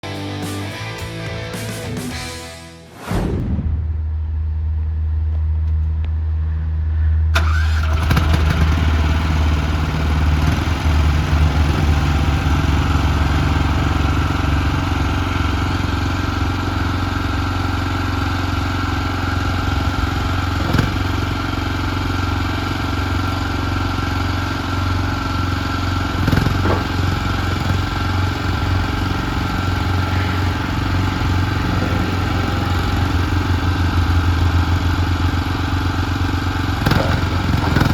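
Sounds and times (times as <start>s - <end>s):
loader engine starting and running: 0.0s - 37.9s
high-pitched whine: 27.6s - 36.4s.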